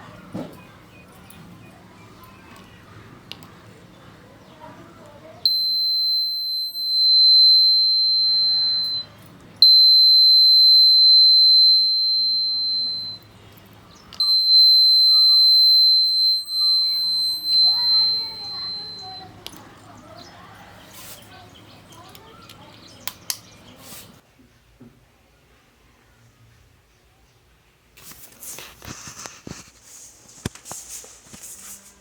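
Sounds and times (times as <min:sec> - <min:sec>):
high-pitched electronic buzzer beeps: 0:05.5 - 0:13.2, 0:14.2 - 0:19.3.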